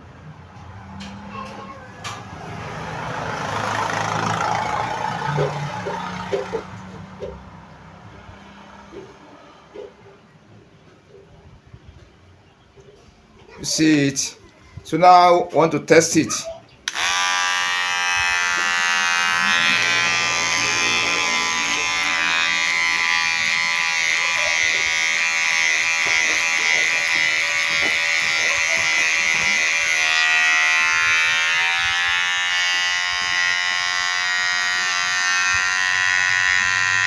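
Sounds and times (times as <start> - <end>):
hair clipper buzzing: 2.2 - 7.3, 16.9 - 37.0.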